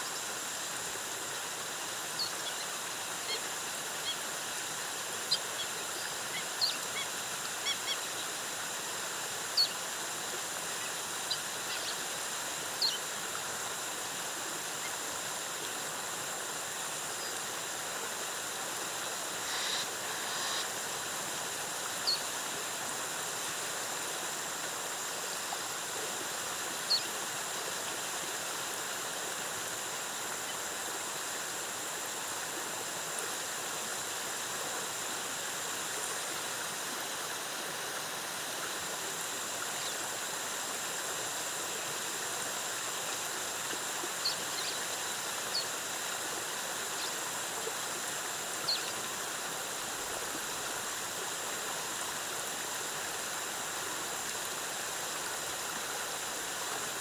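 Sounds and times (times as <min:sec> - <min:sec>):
waterfall cascading: 0:00.0 - 0:57.0.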